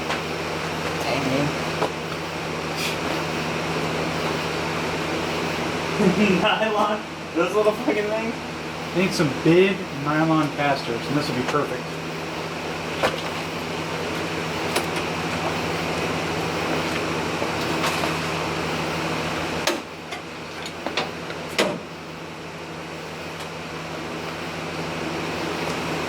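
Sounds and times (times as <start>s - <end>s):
steady mechanical hum: 0.0s - 26.0s
sharp knocks and clanks: 19.6s - 21.9s.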